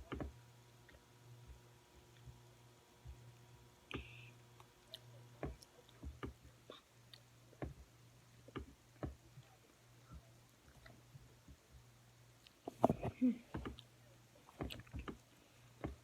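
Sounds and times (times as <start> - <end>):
low steady hum: 0.0 - 16.0
eating clicks and knocks: 10.7 - 13.9, 14.5 - 15.2, 15.8 - 16.0.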